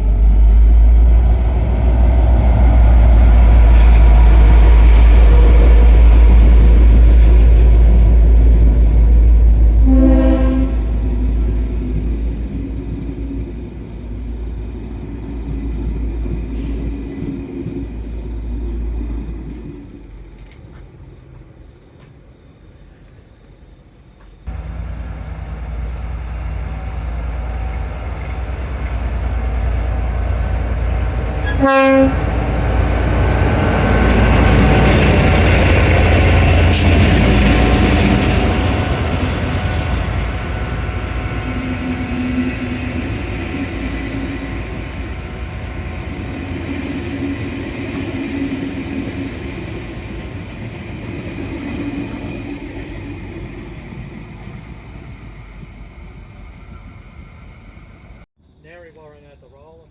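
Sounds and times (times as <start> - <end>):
diesel locomotive passing: 0.0 - 58.3
train horn blast: 9.8 - 11.3, 30.2 - 34.8.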